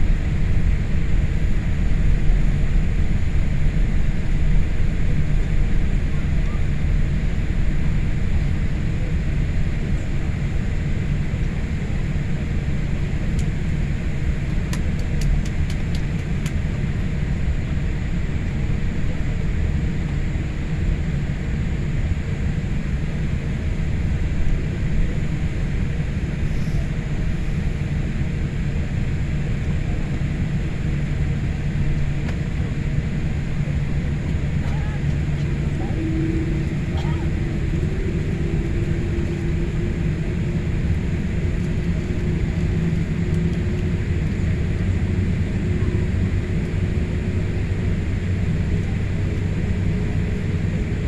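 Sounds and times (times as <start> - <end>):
airplane cabin rumble: 0.0 - 51.0
faint clicks: 14.7 - 16.6.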